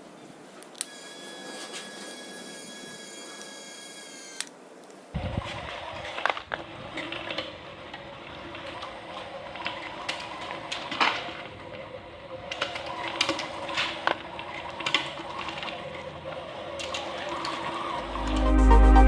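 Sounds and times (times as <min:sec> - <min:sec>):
small electric motor whirring: 0:00.8 - 0:04.6.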